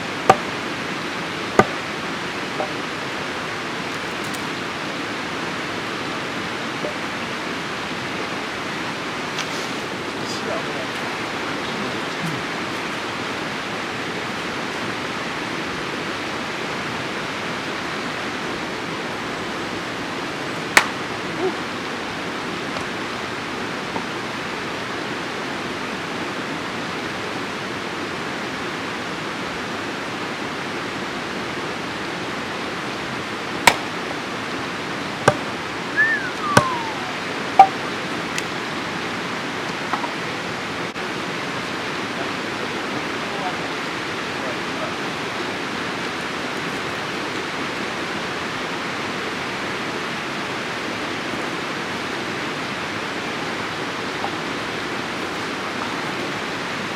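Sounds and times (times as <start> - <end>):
campfire hissing: 0.0 - 56.9
burning wood popping: 33.6 - 34.0, 35.3 - 35.6
short falling whistle: 36.0 - 37.8.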